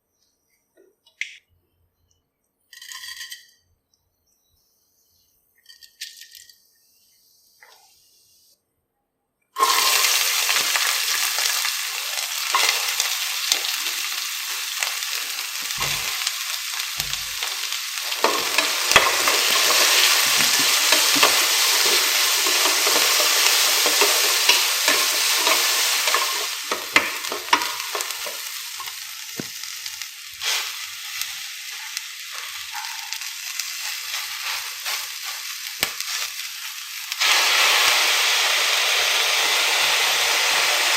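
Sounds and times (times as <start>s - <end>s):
food sizzling in hot oil: 9.6s - 40.9s
spoon stirring in a pan: 15.6s - 29.8s.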